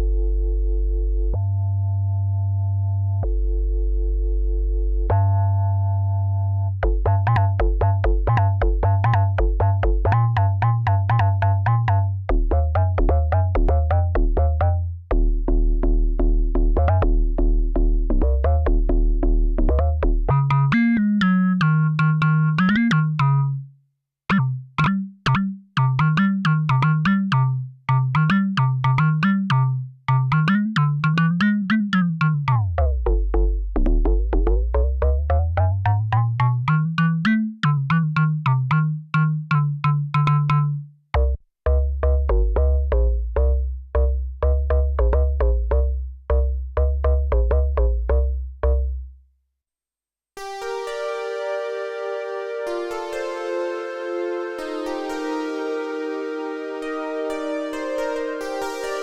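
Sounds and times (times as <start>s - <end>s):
synth bass line: 0.0s - 23.6s, 24.3s - 49.0s, 50.4s - 59.0s
synthesizer chords: 19.6s - 23.6s, 50.4s - 59.0s
sequenced synth pattern: 19.8s - 23.5s, 50.4s - 59.0s.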